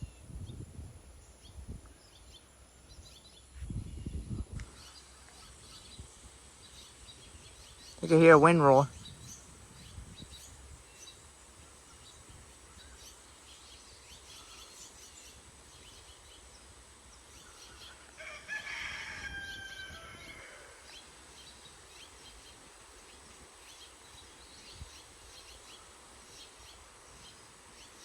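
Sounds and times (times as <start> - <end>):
rooster-like bird call: 17.7 - 21.0.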